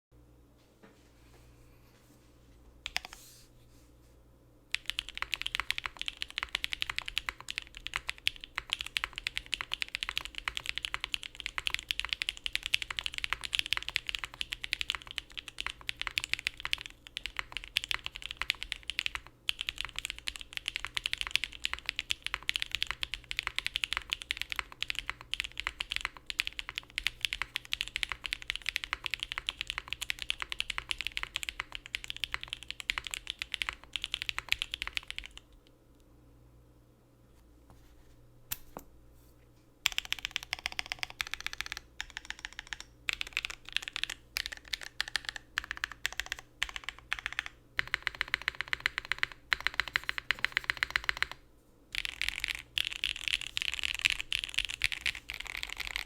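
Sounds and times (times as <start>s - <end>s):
fast typing on mechanical keyboard: 4.7s - 35.5s, 39.8s - 56.0s.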